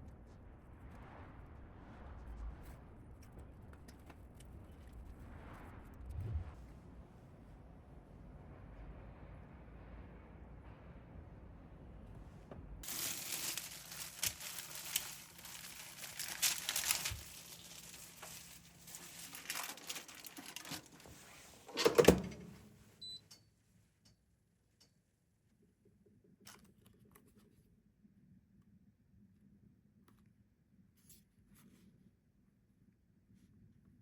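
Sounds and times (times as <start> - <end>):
packaging crinkling and tearing: 12.8 - 21.1.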